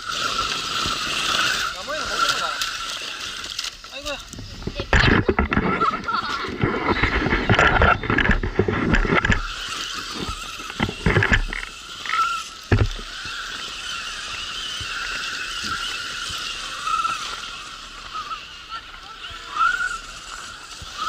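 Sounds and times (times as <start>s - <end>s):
toy car electric motor whining: 0.0s - 21.0s
knocks and scrapes: 4.3s - 13.2s.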